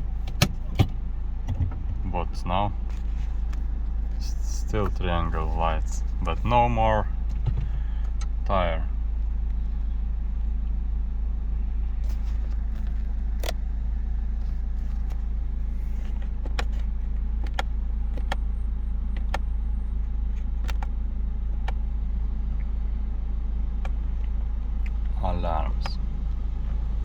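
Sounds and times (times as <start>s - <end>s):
car engine idling: 0.0s - 27.0s
dashboard button clicks: 19.1s - 19.5s.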